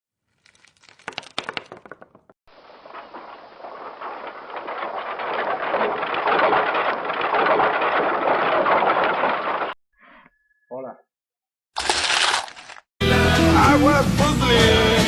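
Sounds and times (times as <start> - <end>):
rocks tumbling and clattering: 0.3 - 9.8.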